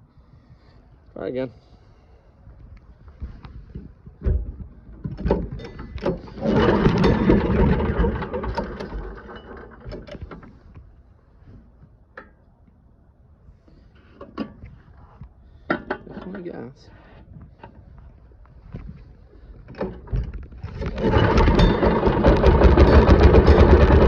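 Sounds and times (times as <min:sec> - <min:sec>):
recoil pull-starter pulls: 0:05.2 - 0:10.6, 0:19.6 - 0:24.0
small engine sputtering: 0:06.2 - 0:09.8, 0:20.7 - 0:24.0.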